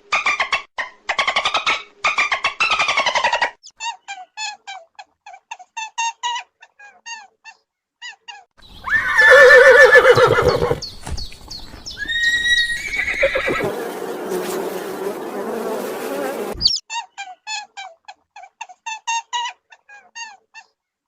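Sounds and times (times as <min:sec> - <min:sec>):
horse whinnying: 0:08.8 - 0:10.8, 0:12.0 - 0:13.8.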